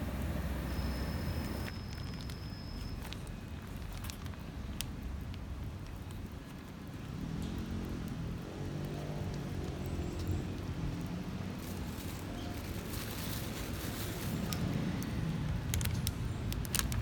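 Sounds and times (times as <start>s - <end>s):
vehicle engine passing by: 0.0s - 1.7s.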